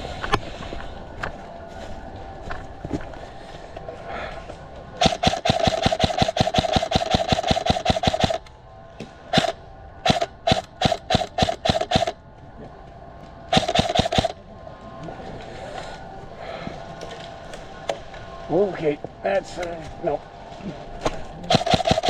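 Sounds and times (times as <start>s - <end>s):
gearbox motor whining: 4.6s - 20.2s
airsoft gun firing: 5.0s - 8.5s, 9.3s - 12.2s, 13.5s - 14.4s, 21.5s - 22.0s.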